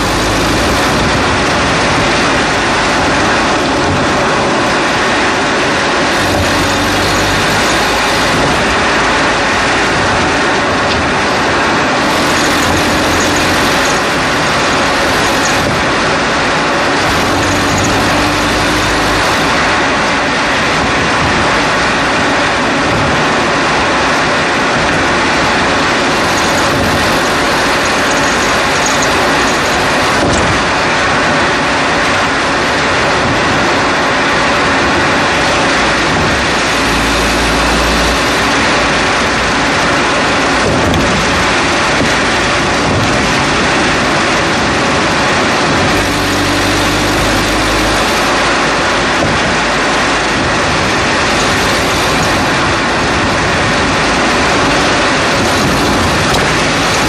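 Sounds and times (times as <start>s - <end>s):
low hum: 0.0s - 5.2s, 5.8s - 21.0s, 35.4s - 42.6s
road and tyre noise: 0.0s - 57.0s.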